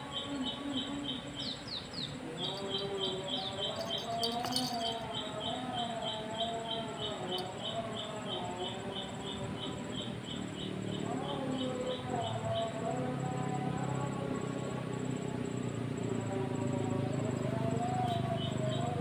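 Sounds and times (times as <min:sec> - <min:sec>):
cricket chirping: 0:00.0 - 0:19.0.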